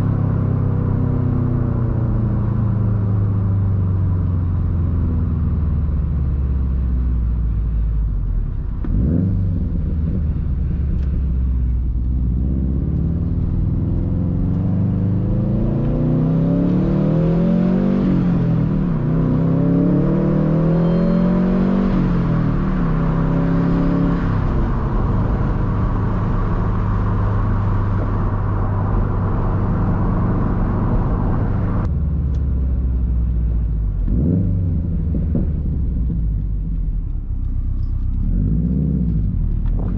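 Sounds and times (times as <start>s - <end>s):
car engine accelerating: 0.0s - 39.9s
engine revving: 8.8s - 11.1s, 12.1s - 32.4s, 33.6s - 36.7s.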